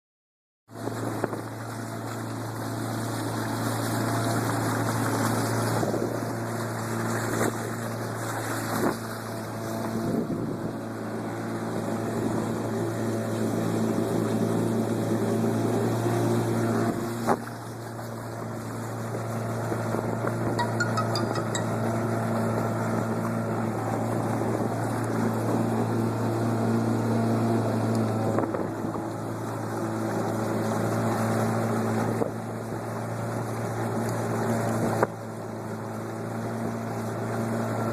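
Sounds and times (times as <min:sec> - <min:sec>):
boat motor humming: 0:00.7 - 0:37.9
wind on microphone: 0:09.8 - 0:10.8.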